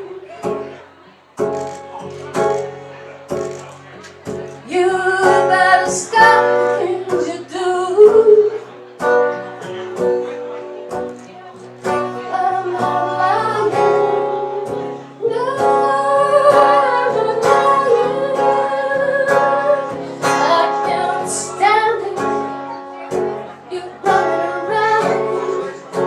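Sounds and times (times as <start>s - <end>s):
plucked acoustic guitar: 0.0s - 26.0s
woman singing: 4.6s - 8.6s, 12.0s - 22.5s, 23.6s - 26.0s.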